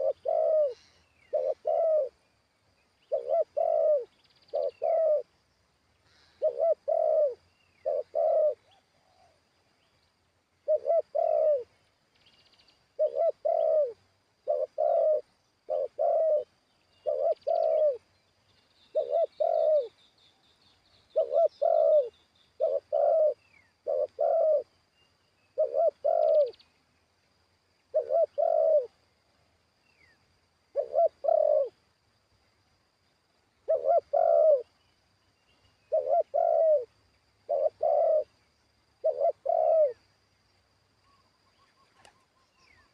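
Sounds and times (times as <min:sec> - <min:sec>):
dove cooing: 0:00.0 - 0:02.2, 0:03.0 - 0:05.3, 0:06.1 - 0:09.4, 0:10.6 - 0:11.8, 0:12.9 - 0:18.1, 0:18.9 - 0:20.0, 0:21.1 - 0:24.7, 0:25.5 - 0:26.6, 0:27.9 - 0:29.0, 0:30.7 - 0:31.8, 0:33.6 - 0:34.8, 0:35.8 - 0:38.4, 0:39.0 - 0:40.0
small birds chirping: 0:00.0 - 0:27.0, 0:27.8 - 0:29.0, 0:33.0 - 0:42.9.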